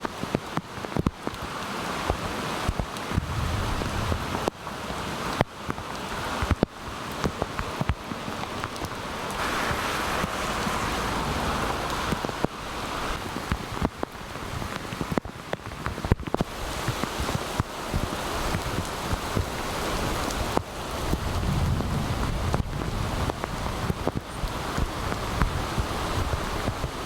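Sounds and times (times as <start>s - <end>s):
heavy rain: 0.0s - 27.0s
low wind rumble: 3.1s - 5.6s, 8.1s - 15.2s, 18.4s - 27.0s
wind buffeting microphone: 3.1s - 5.6s, 7.6s - 27.0s.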